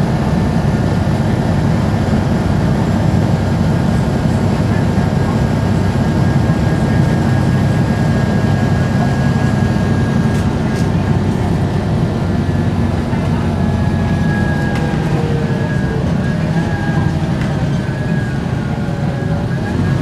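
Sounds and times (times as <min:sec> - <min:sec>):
bus engine drone: 0:00.0 - 0:20.0.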